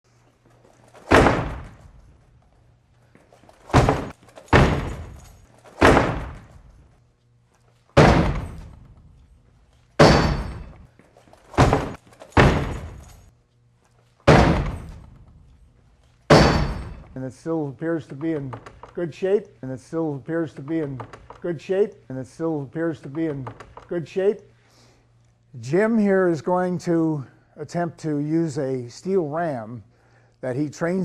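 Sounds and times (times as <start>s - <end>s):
heavy blows on a door: 1.1s - 1.8s, 3.7s - 5.2s, 5.8s - 6.6s, 8.0s - 8.8s, 11.6s - 13.0s, 14.3s - 15.1s.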